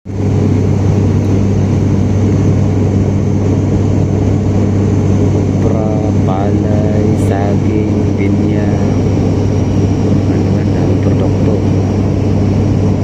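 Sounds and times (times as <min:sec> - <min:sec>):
airliner engines droning in cabin: 0:00.1 - 0:13.0.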